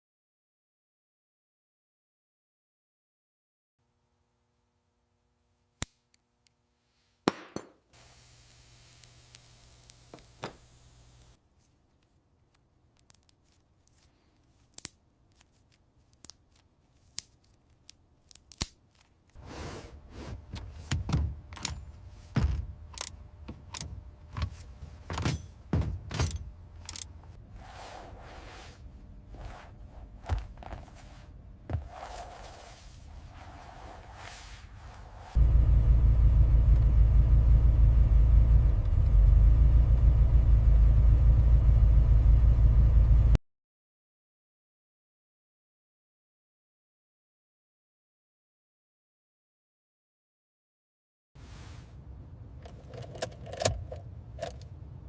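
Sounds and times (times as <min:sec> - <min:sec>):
heavy thuds: 0:19.4 - 0:27.4
sharp knocks and clicks: 0:20.5 - 0:27.4.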